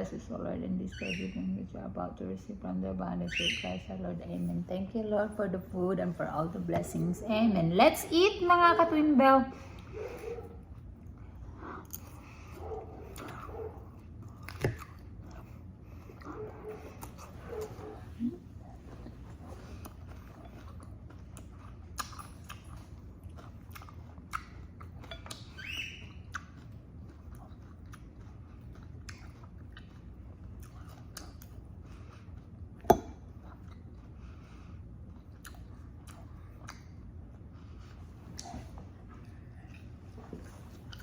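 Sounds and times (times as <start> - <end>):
low steady hum: 0.0 - 41.0
chewing and biting: 9.7 - 41.0.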